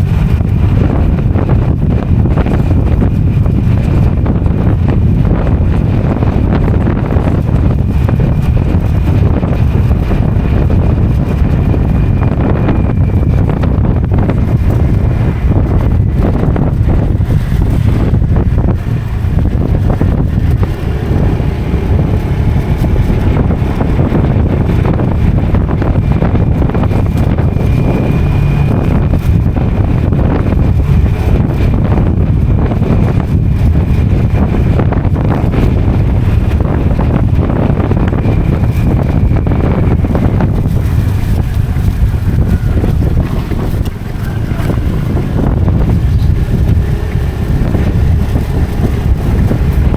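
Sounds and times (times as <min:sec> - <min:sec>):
motorcycle engine: 0:00.0 - 0:49.9
road rumble: 0:00.0 - 0:49.9
wind buffeting microphone: 0:00.0 - 0:49.9.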